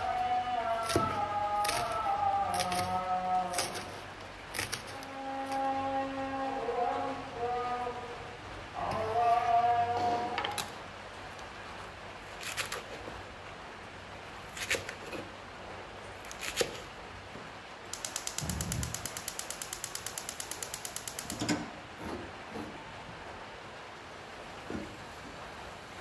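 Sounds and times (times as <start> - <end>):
mechanical clicks: 17.9 - 21.6.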